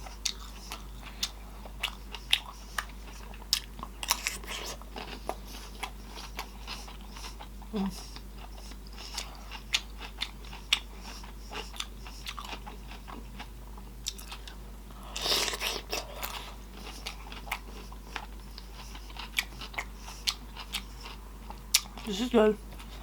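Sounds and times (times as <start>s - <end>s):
wet chewing: 0.0s - 23.0s.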